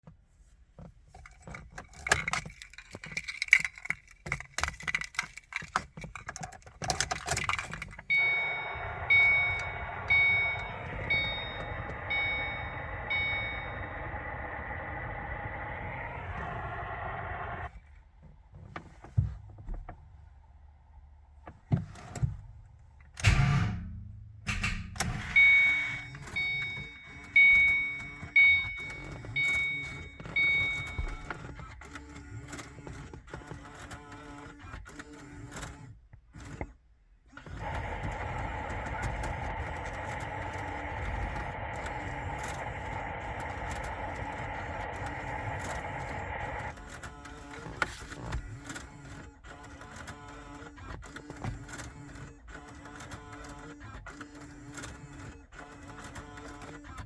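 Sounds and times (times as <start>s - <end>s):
car keys jangling: 0.7s - 15.1s, 23.0s - 56.9s
dashboard warning chime: 8.0s - 17.7s, 23.2s - 32.3s, 37.4s - 47.8s
steady hum: 8.1s - 17.7s, 23.2s - 31.3s, 37.5s - 47.8s.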